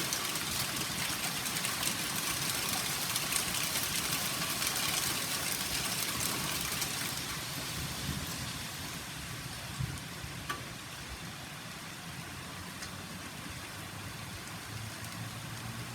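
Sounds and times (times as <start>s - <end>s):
hailstones pattering: 0.0s - 9.9s.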